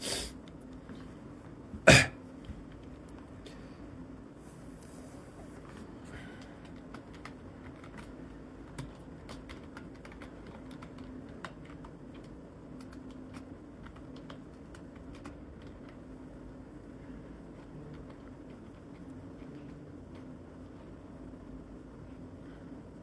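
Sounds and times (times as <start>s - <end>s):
steady low hum: 0.0s - 23.0s
light clicks and taps: 5.6s - 16.2s.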